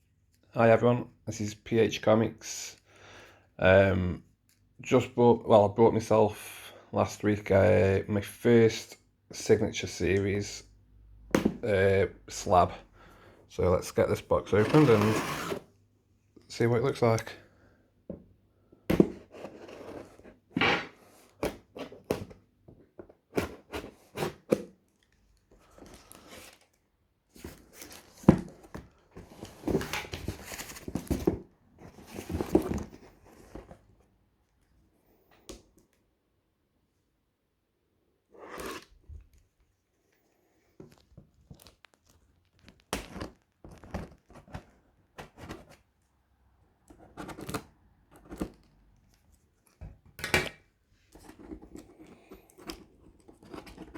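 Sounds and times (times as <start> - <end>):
cardboard and packing rustling: 14.5 - 15.6, 18.9 - 24.7, 25.5 - 34.1, 40.8 - 46.0, 51.0 - 53.9.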